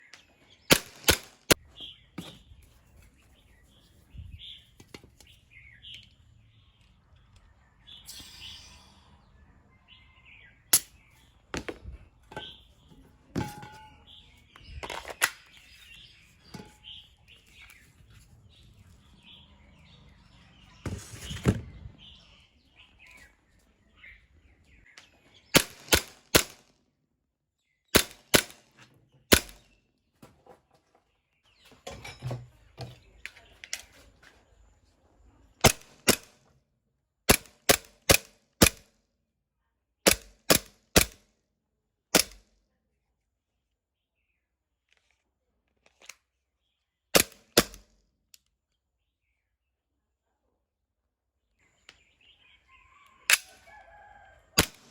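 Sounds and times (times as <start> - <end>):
airsoft gun shots: 0.7 - 1.6, 25.6 - 26.6, 29.3 - 29.6, 35.6 - 36.4.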